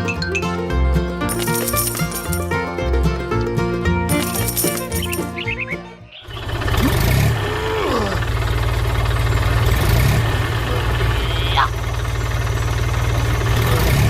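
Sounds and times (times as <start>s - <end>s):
small tractor engine chugging: 4.1s - 14.0s.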